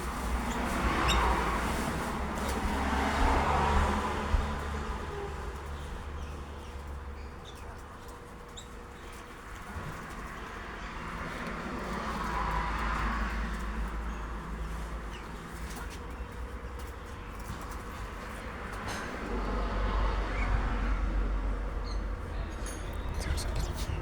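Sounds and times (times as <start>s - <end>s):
steady low rumble: 22.2s - 24.0s.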